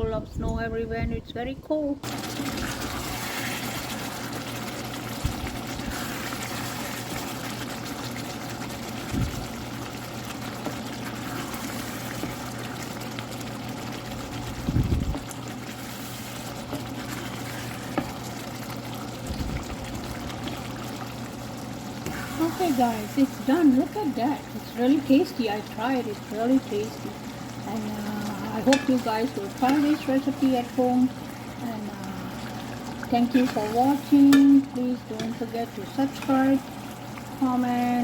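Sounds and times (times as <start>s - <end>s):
food sizzling in oil: 2.0s - 38.0s.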